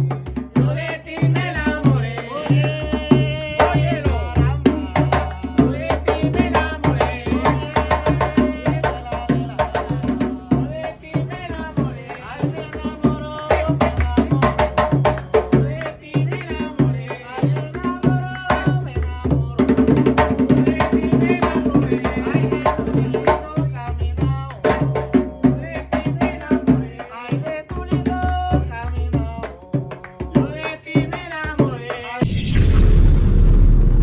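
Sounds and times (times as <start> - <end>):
person singing: 0.0 - 14.7
hand drums beating fast rhythm: 0.0 - 32.2.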